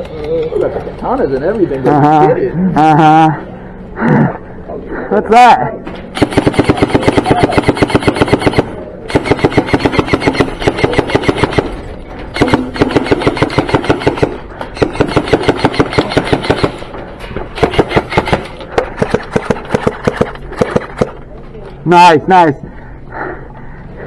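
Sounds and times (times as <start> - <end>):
airsoft gun firing bursts: 6.1 - 17.0, 17.6 - 21.2.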